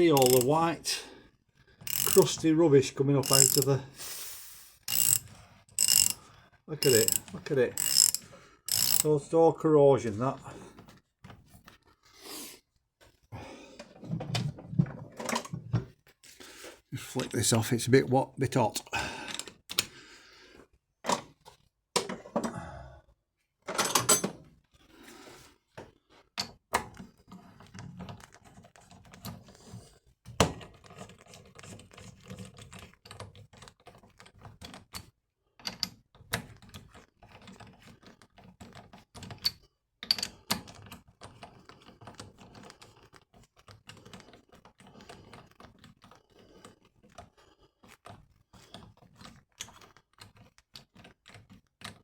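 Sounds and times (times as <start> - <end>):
hand tools tapping on metal: 0.0 - 0.6, 1.9 - 2.4, 3.2 - 3.7, 4.9 - 5.2, 5.8 - 6.2, 6.8 - 9.1.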